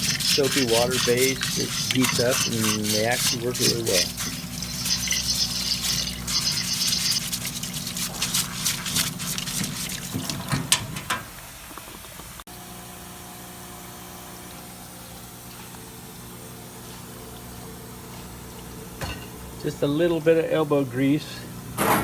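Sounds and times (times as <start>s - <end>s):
water splashing and spraying: 0.0s - 11.6s
pump humming: 0.0s - 18.9s.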